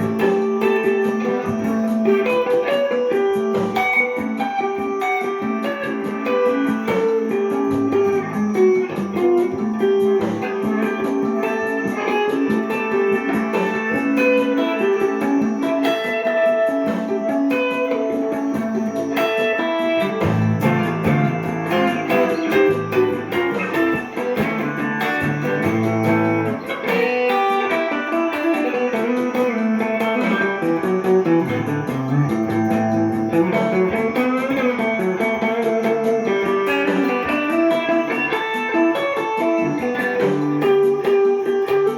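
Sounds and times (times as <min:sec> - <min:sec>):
clean electric guitar runs: 0:00.0 - 0:41.9
low bass notes: 0:20.2 - 0:26.6.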